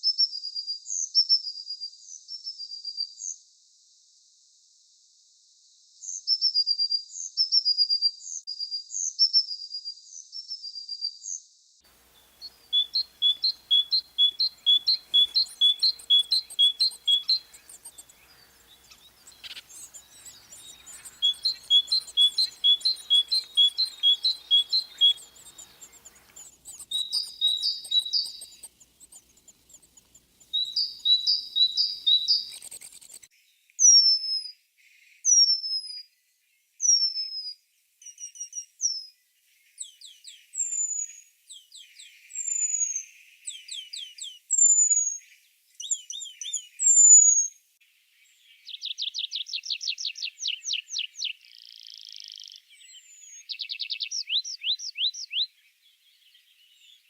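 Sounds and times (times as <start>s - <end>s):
songbirds singing: 11.9s - 33.3s, 48.2s - 57.0s.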